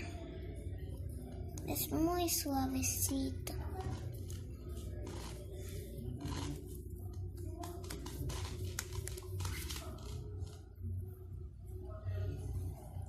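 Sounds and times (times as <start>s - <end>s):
steady low hum: 0.0s - 13.0s
scratchy rustles: 3.6s - 6.8s.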